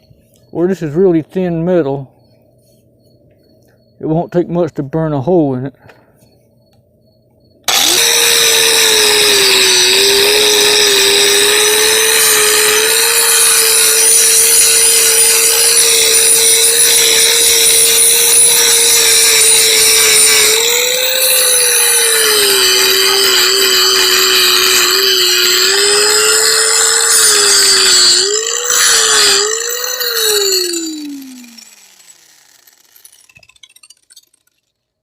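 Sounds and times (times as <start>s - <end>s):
power tool whining: 7.6s - 34.7s.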